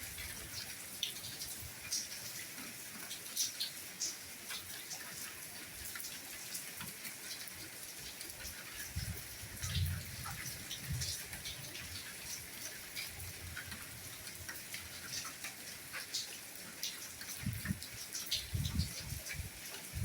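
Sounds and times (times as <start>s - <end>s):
soft rainfall hiss: 0.0s - 20.0s
raindrops ticking: 8.2s - 20.0s.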